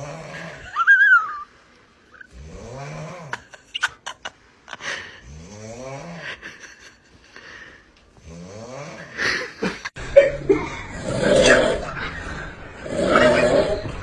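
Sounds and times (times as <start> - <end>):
person snoring: 0.0 - 0.8, 2.3 - 3.5, 4.8 - 6.4, 8.2 - 9.7, 10.6 - 12.0, 12.8 - 13.9.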